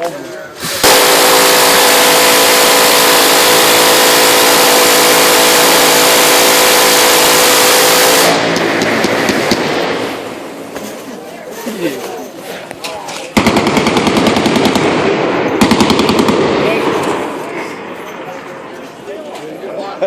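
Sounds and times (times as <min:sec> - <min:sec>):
machine gun firing rapid burst: 0:00.8 - 0:08.4, 0:13.4 - 0:17.0
gunshot reports with echo: 0:13.4 - 0:17.7.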